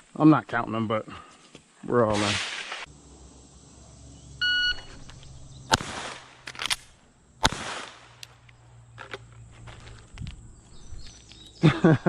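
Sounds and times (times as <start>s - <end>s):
shot timer beep: 4.4s - 4.9s
pistol shots: 5.7s - 8.4s.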